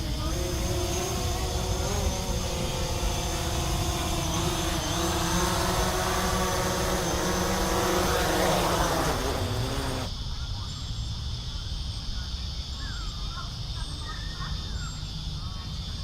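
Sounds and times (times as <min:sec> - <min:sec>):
drone propellers whining: 0:00.0 - 0:10.1
cicadas shrilling: 0:00.0 - 0:16.0.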